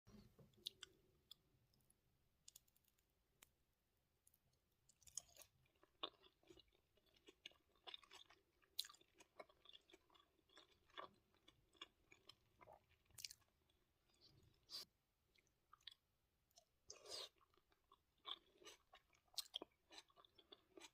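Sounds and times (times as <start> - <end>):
crunchy chewing: 4.9 - 13.5, 16.6 - 20.9.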